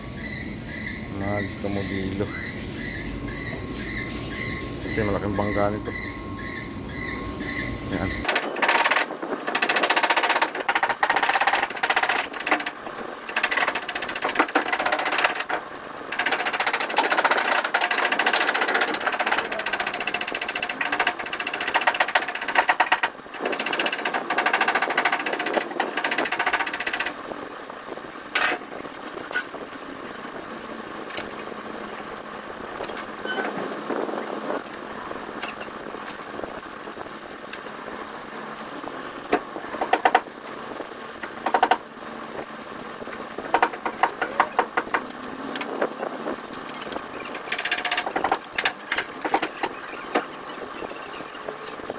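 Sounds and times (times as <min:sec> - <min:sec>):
fast mechanical hammering rattle: 0:08.2 - 0:27.5, 0:28.3 - 0:29.6, 0:39.3 - 0:40.4, 0:41.2 - 0:41.9, 0:43.3 - 0:46.0, 0:46.6 - 0:51.6.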